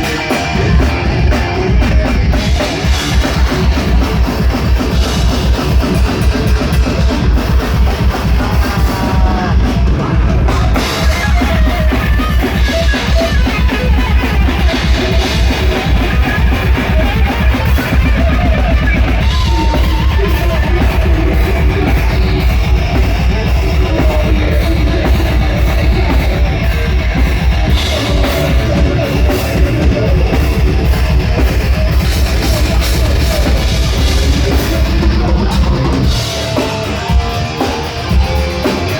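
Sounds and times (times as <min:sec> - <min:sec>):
distorted electric guitars: 0:00.0 - 0:38.9
melodic guitar line: 0:00.0 - 0:38.9
pounding bass drum: 0:00.0 - 0:38.9.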